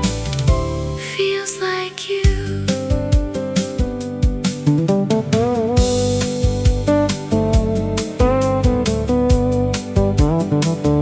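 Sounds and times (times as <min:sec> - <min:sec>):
drum kit beat: 0:00.0 - 0:01.1, 0:02.2 - 0:11.0
sliding guitar line: 0:04.6 - 0:11.0.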